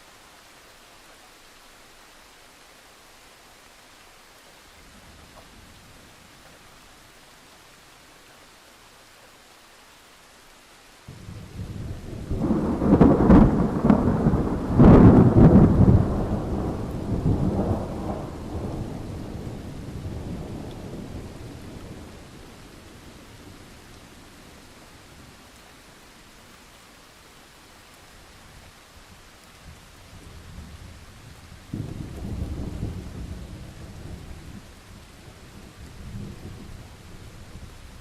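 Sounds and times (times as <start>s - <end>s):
steady rain hiss: 0.0s - 38.0s
thunder rumbling and cracking: 11.1s - 22.3s, 31.7s - 37.8s.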